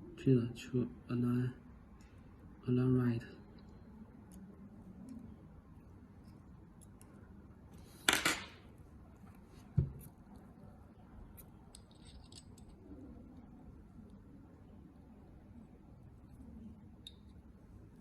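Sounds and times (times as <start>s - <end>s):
metal tweezers scraping: 11.4s - 12.8s.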